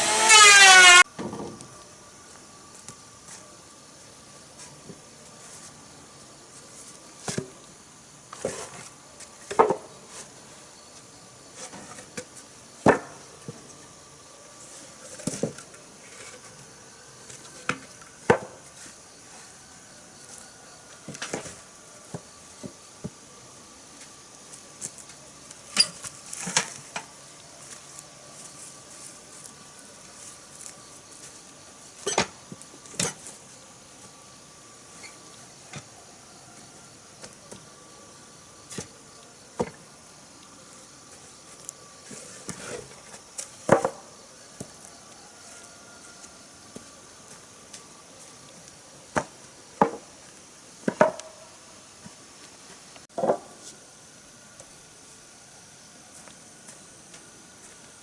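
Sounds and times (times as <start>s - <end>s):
faint insect drone: 0.0s - 58.0s
wooden boards knocking: 50.9s - 51.2s, 53.1s - 53.5s.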